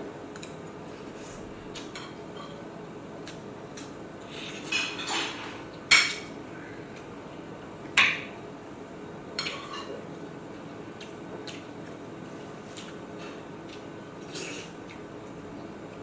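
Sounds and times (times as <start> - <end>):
dishes and cutlery clattering: 4.5 - 6.3, 9.4 - 10.0.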